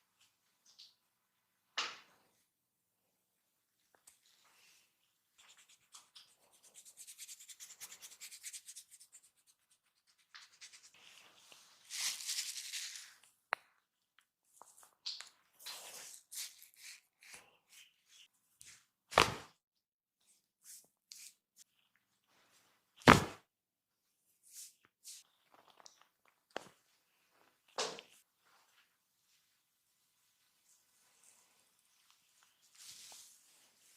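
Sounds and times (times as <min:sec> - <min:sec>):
hands rubbing skin: 0:05.4 - 0:13.1
hands scratching skin and hair: 0:05.4 - 0:13.2, 0:15.6 - 0:18.8.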